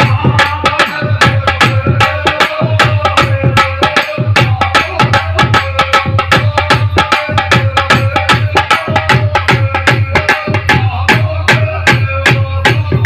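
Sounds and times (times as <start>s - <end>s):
fast hand drum beat: 0.0s - 13.0s.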